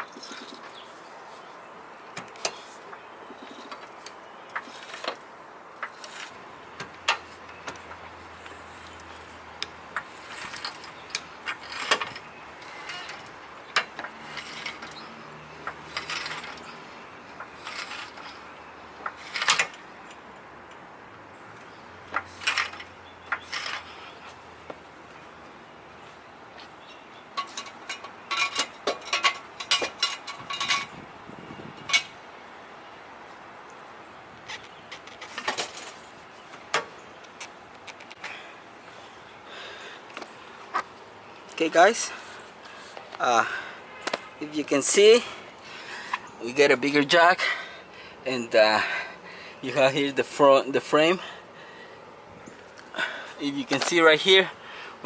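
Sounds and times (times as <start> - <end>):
metallic clicks and rattles: 5.8 - 16.8, 27.4 - 31.0.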